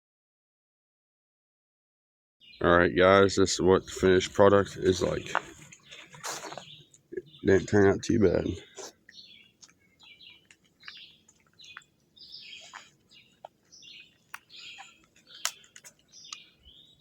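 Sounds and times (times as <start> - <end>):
birds chirping: 2.4 - 17.0
sharp clicks: 14.3 - 16.4.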